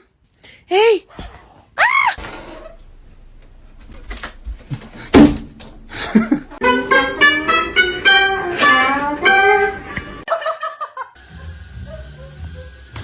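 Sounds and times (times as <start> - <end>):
loud thump: 5.1 - 5.6
plucked guitar music: 6.5 - 10.3.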